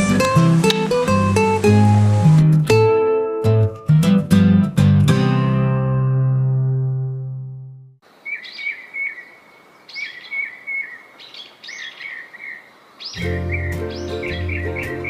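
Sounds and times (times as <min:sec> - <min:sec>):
faint outdoor hiss: 0:00.0 - 0:02.4, 0:08.0 - 0:15.0
bird chirping: 0:08.1 - 0:15.0.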